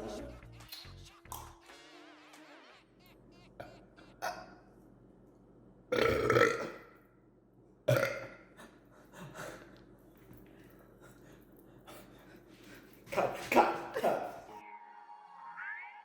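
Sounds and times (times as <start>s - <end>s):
person burping: 3.6s - 4.6s, 5.9s - 7.0s, 7.9s - 8.6s.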